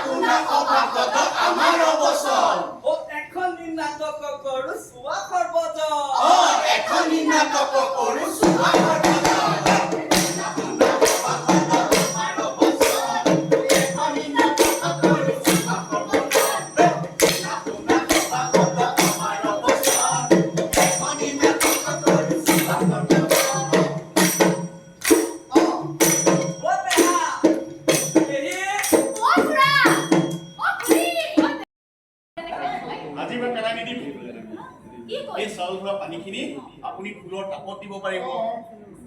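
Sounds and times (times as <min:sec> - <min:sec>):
percussive music with jingles: 0:07.0 - 0:31.6.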